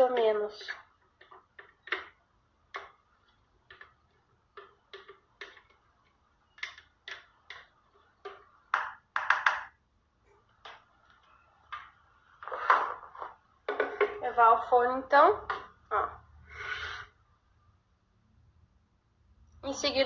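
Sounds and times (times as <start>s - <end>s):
utensil tapping blender jar: 3.6s - 5.9s.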